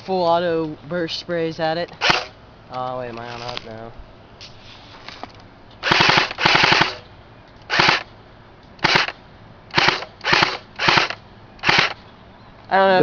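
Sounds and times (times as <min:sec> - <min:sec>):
airsoft gun full-auto bursts: 0:02.0 - 0:02.3, 0:05.8 - 0:07.0, 0:07.7 - 0:08.1, 0:08.8 - 0:12.0.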